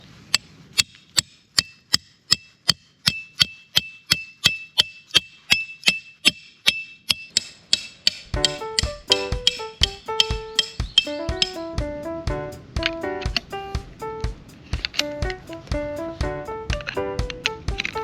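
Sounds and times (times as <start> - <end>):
wood-block percussion beat: 7.8 - 18.0
background music pitched notes: 8.3 - 18.0.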